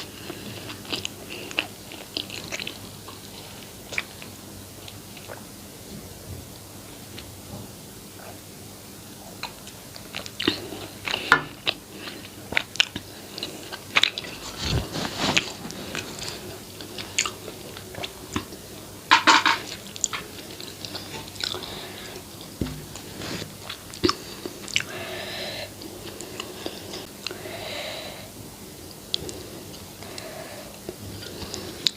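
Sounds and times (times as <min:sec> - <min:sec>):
chewing and biting: 0:09.4 - 0:18.6.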